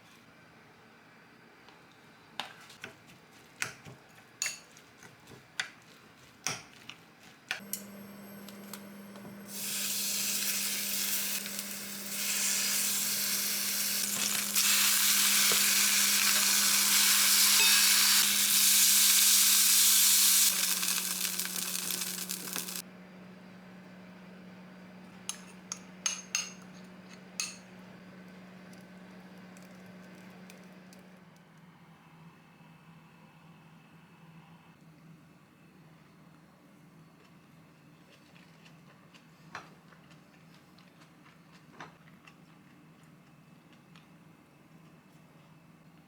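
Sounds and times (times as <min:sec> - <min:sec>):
loud sizzling hiss: 0:09.5 - 0:22.8.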